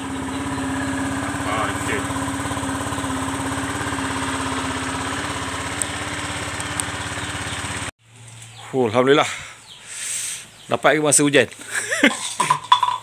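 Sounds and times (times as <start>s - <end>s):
scooter engine droning: 0.0s - 7.9s
air and road noise hiss: 9.3s - 10.7s.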